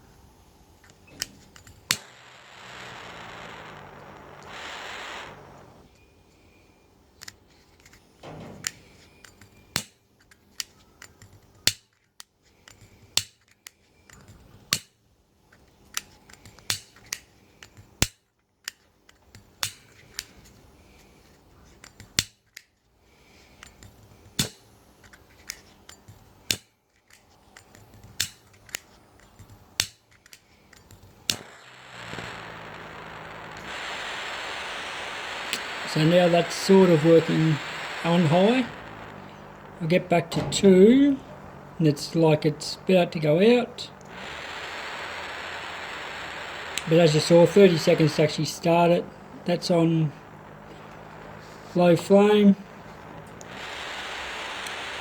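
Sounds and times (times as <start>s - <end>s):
hiss of burning gas flame: 1.0s - 6.6s, 16.3s - 18.2s, 27.6s - 55.0s.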